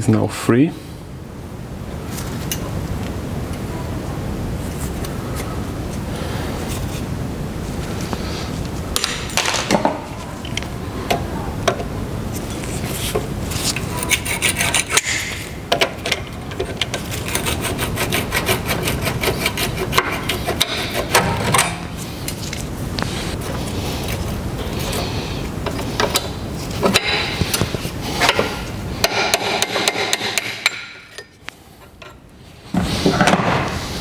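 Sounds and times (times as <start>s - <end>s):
hand tools scraping and knocking: 8.0s - 34.0s.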